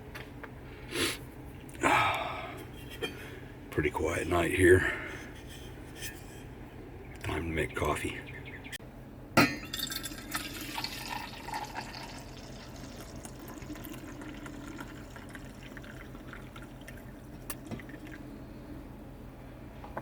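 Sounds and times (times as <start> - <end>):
water pouring into container: 10.0 - 18.2.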